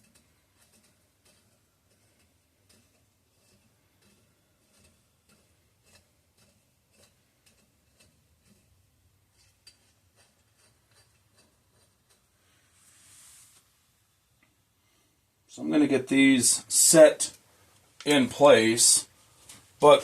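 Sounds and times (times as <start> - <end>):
small metal parts clicking: 0.0 - 8.7.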